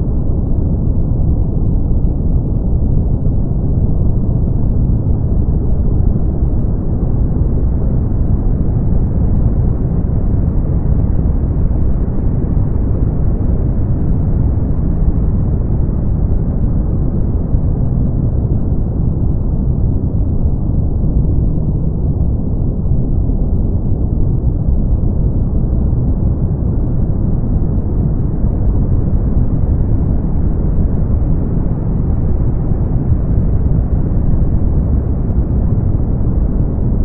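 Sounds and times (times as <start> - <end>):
brown noise: 0.0 - 37.0.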